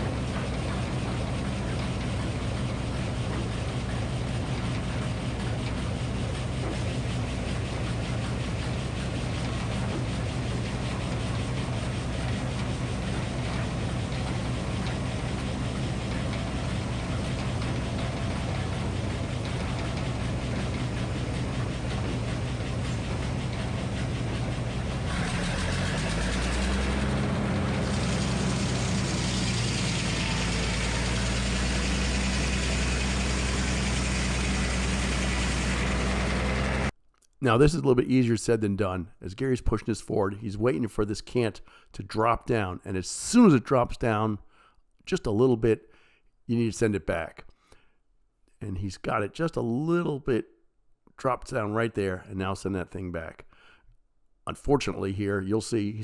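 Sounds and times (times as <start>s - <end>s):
engine running: 0.0s - 36.9s
circular saw blade cutting log: 9.0s - 36.9s.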